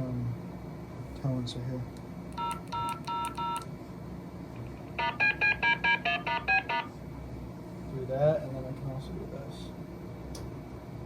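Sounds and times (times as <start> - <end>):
touch-tone beeps: 5.0 - 6.9.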